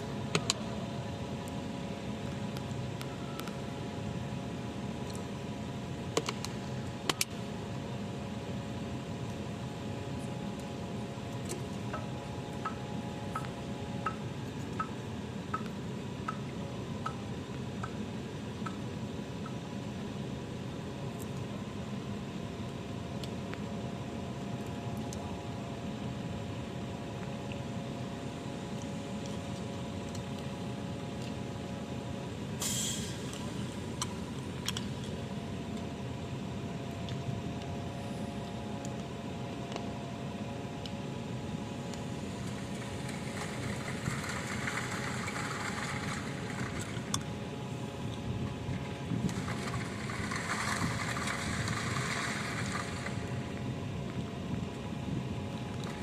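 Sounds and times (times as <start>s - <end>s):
heavy machinery engine hum: 0.0s - 56.0s
brief hiss: 32.6s - 33.4s.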